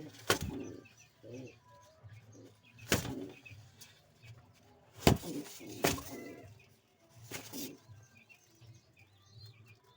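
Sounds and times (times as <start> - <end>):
pigeons cooing: 0.0 - 1.6, 5.1 - 6.6.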